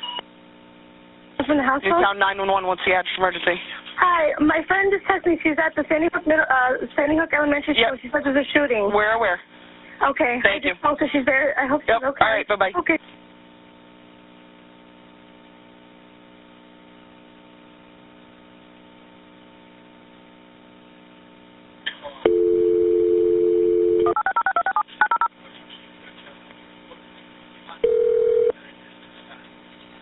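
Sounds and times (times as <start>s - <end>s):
faint telephone line hum: 22.0s - 29.6s
dial tone: 22.3s - 25.3s, 27.8s - 28.6s
touch-tone dialing beeps: 22.3s - 25.3s.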